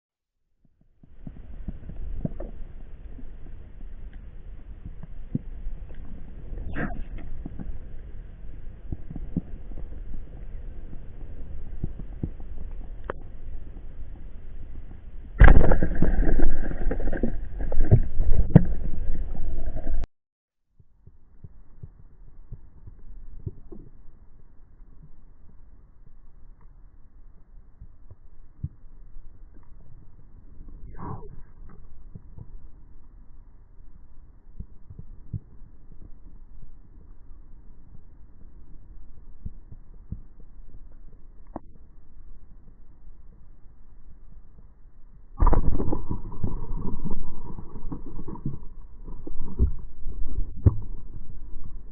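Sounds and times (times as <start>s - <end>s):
faint low hum: 0.4s - 20.1s, 20.7s - 51.9s
muffled underwater rumble: 0.6s - 20.1s, 20.9s - 51.9s
water splashing and churning: 15.4s - 20.1s.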